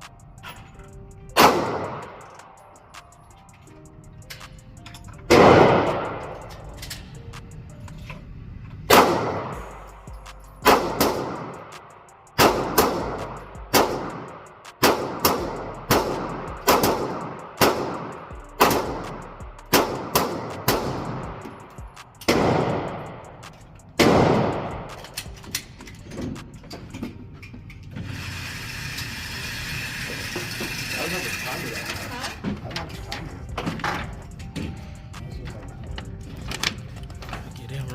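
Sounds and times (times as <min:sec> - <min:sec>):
faint gunshots: 0:01.4 - 0:02.2, 0:08.9 - 0:09.6, 0:22.3 - 0:23.2, 0:24.0 - 0:25.0
gunshots with echo: 0:01.4 - 0:02.4, 0:05.3 - 0:06.4, 0:08.9 - 0:09.8, 0:10.6 - 0:21.6, 0:22.2 - 0:25.1.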